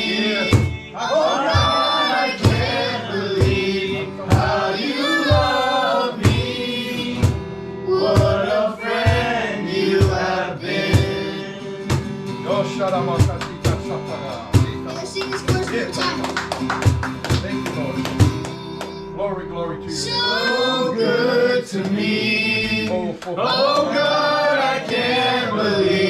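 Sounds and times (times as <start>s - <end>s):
voices singing worship song: 0.0s - 12.9s, 19.8s - 26.0s
instruments with steady beat: 0.0s - 19.2s.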